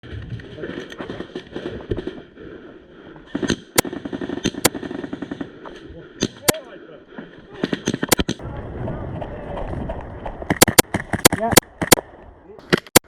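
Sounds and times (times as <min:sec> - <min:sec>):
airsoft gunfire: 0:03.4 - 0:05.5, 0:10.5 - 0:12.0.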